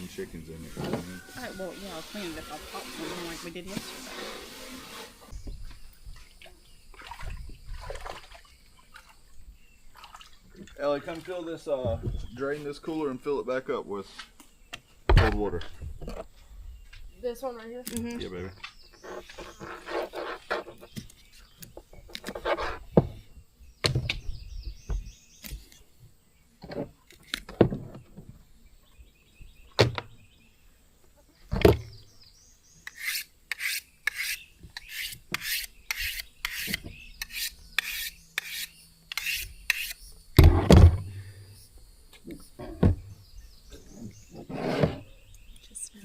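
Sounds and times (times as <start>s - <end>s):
rasping scraping strokes: 0.6s - 5.3s, 19.0s - 21.0s, 22.2s - 22.9s, 32.8s - 40.7s, 43.9s - 45.1s.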